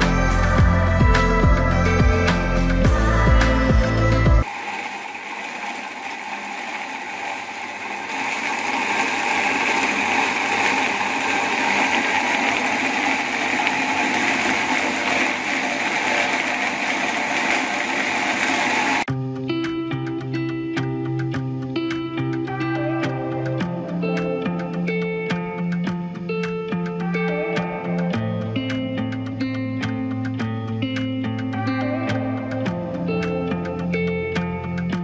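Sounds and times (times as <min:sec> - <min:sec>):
music: 0:00.0 - 0:04.5, 0:19.1 - 0:35.0.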